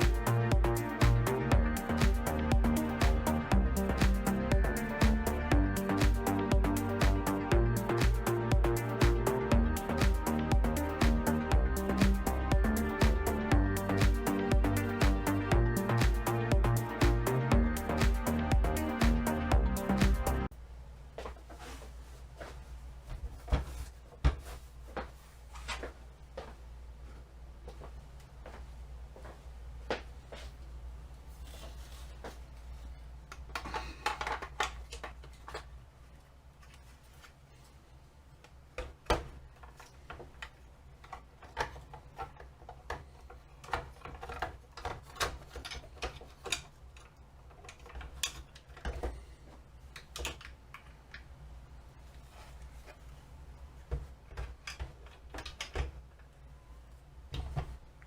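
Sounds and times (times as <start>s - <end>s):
steady low hum: 0.0s - 34.1s.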